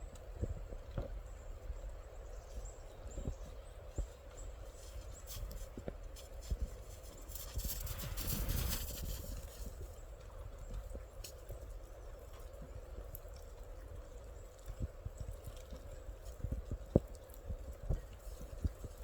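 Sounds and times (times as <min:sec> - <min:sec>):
wind rumbling on microphone: 0:00.0 - 0:19.0
soft knocks and crunches: 0:04.8 - 0:09.8.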